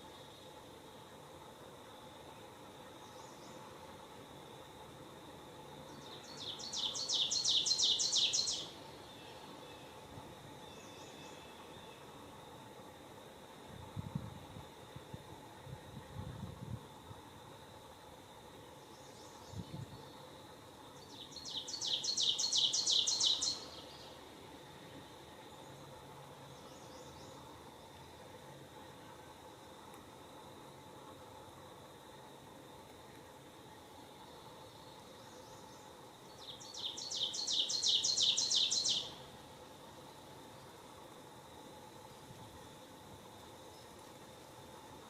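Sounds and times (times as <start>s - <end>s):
faint high outdoor hum: 0.0s - 45.0s
faint insect drone: 0.0s - 45.0s
songbird singing high notes: 36.4s - 39.1s.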